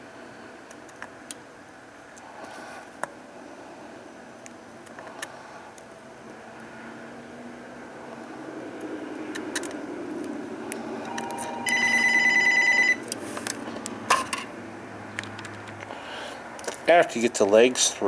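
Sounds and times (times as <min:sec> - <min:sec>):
low hum: 0:03.3 - 0:14.9
electronic trilling ring: 0:11.0 - 0:13.0
small clicks: 0:15.2 - 0:15.9.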